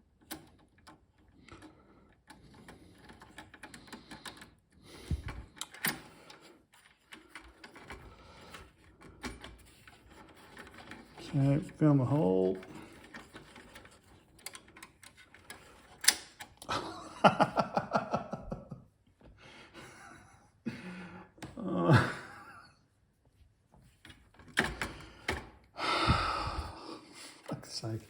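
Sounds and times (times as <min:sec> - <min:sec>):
man grunting and sighing: 0:20.7 - 0:22.6, 0:25.8 - 0:27.0.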